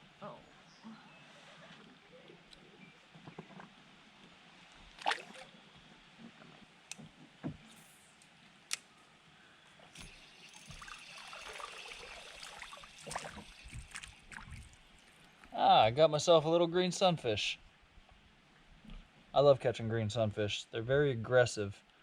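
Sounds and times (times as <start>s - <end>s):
water splashing and sloshing: 4.9s - 5.5s, 9.9s - 15.6s.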